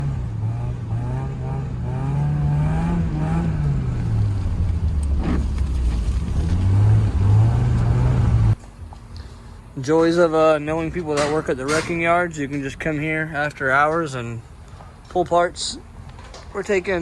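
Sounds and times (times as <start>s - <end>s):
car engine revving: 0.0s - 8.6s.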